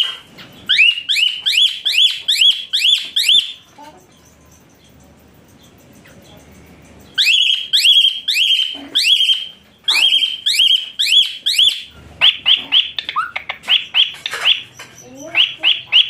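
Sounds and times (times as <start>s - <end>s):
bird chirping: 0.0s - 16.0s.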